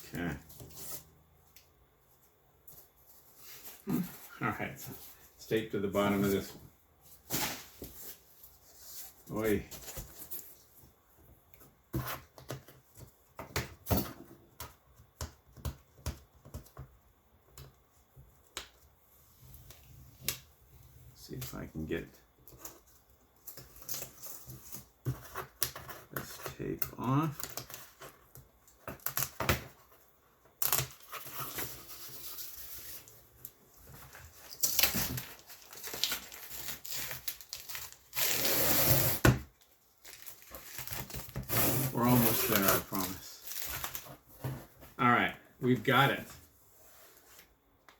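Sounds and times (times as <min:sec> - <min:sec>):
cardboard packaging handled: 0:30.6 - 0:45.0
tape ripping off packaging: 0:34.6 - 0:39.3.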